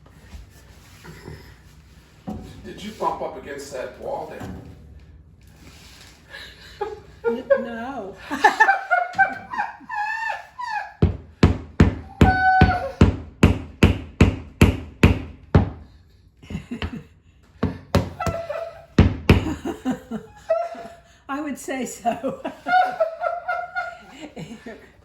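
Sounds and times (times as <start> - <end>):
hammer knocking: 11.0 - 15.8, 17.6 - 19.7.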